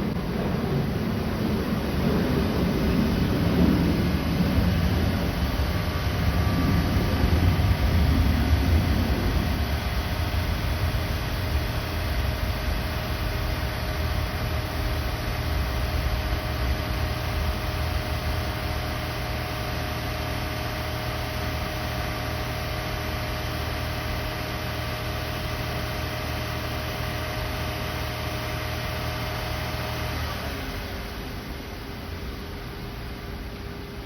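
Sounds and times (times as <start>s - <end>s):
air conditioner humming: 0.0s - 34.0s.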